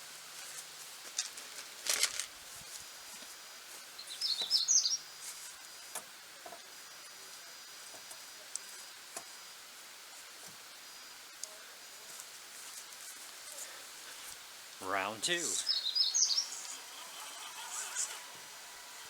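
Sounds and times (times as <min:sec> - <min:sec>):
faint steady background hiss: 0:00.0 - 0:19.0
small bird chirping: 0:04.0 - 0:05.0.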